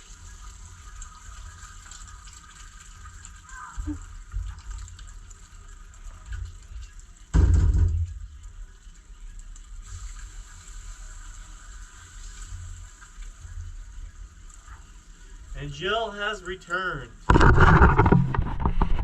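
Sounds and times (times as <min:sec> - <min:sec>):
eggs sizzling in a pan: 0:00.0 - 0:16.4.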